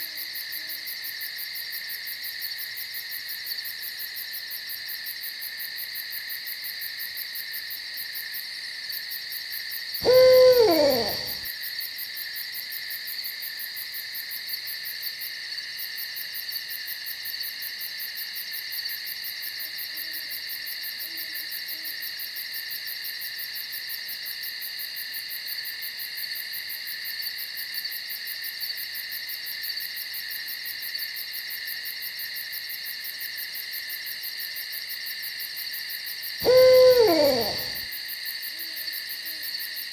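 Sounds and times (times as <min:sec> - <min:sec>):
insects chirping: 0:10.0 - 0:11.4, 0:36.4 - 0:37.8
owl hooting: 0:10.0 - 0:11.4, 0:36.4 - 0:37.8.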